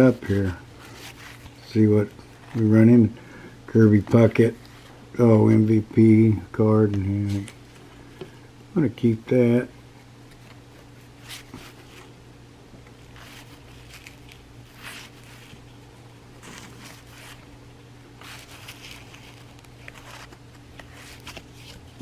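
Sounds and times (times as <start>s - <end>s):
cards scraping and swishing: 0.0s - 1.7s, 10.3s - 12.2s, 13.1s - 15.8s, 16.4s - 17.5s, 18.2s - 22.0s.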